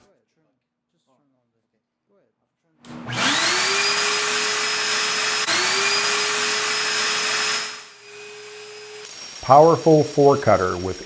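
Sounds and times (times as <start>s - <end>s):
vacuum dust extractor motor whining: 2.9s - 9.3s.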